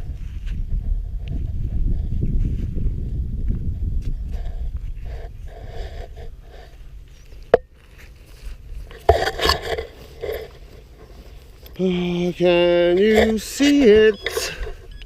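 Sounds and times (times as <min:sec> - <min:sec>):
soil scraping and rustling: 0:04.3 - 0:15.0.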